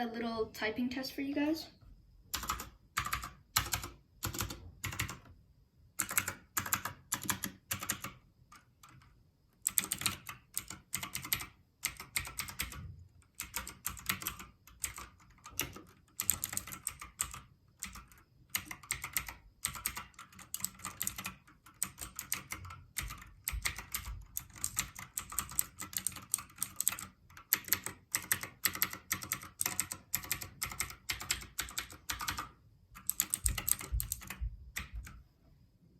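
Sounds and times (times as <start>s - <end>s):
keyboard typing clicks: 2.3s - 5.3s, 6.0s - 35.2s.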